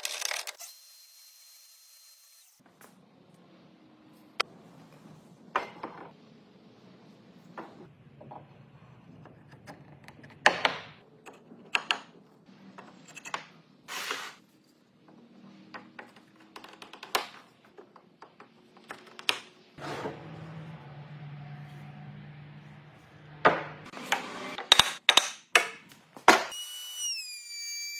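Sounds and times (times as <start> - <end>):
rasping scrape: 19.8 - 20.6.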